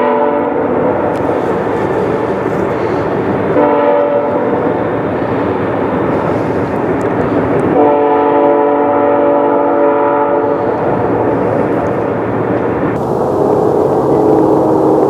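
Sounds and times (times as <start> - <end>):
locomotive air horn chord: 0.0 - 0.7, 3.6 - 4.5, 7.8 - 10.8, 13.0 - 15.0
moving train rushing: 0.0 - 15.0.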